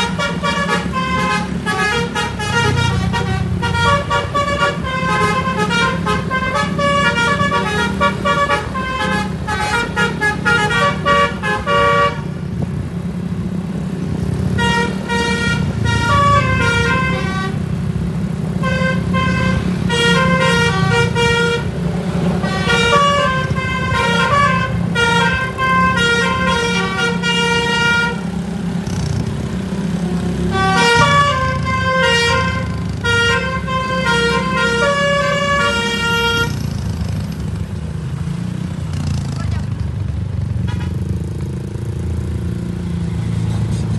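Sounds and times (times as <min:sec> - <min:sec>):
musical air horn playing a tune: 0:00.0 - 0:12.2, 0:14.6 - 0:17.6, 0:22.4 - 0:28.2, 0:30.5 - 0:36.6.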